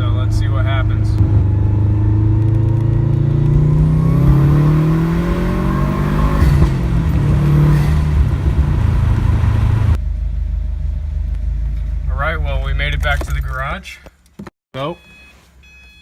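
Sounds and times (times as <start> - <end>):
car engine revving under boost: 1.1 - 10.0.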